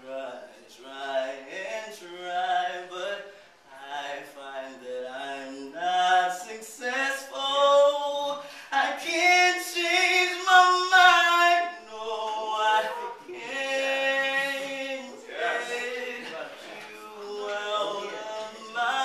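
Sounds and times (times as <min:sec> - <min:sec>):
person singing unaccompanied: 0:03.9 - 0:19.0.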